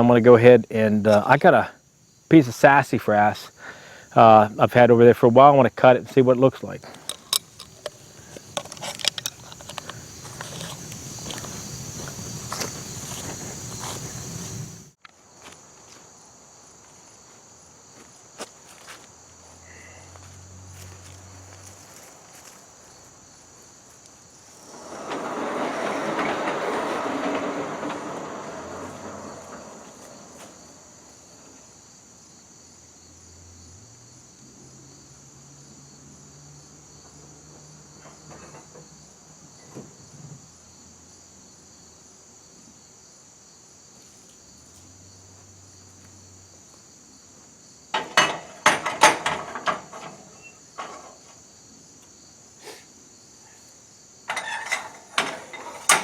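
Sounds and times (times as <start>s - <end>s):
crickets chirring: 0.0s - 56.0s
sharp knocks or clanks: 24.6s - 31.2s, 47.9s - 51.3s, 54.3s - 56.0s
rushing noise: 24.6s - 31.5s.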